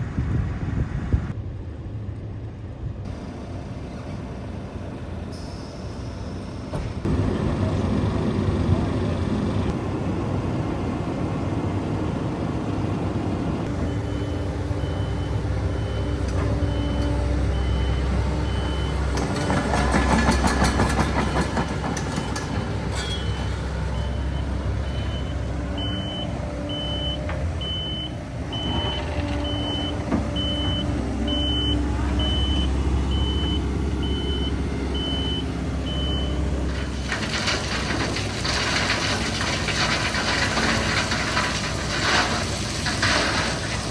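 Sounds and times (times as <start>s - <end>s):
diesel machinery running: 0.0s - 43.9s
reversing alarm beeping: 13.7s - 19.8s, 21.2s - 36.5s
machinery rattling: 15.7s - 25.2s, 35.9s - 43.9s.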